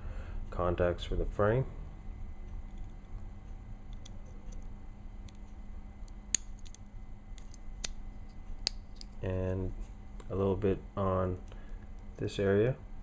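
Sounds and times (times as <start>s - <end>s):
pistol parts clicking and tapping: 6.3s - 6.8s.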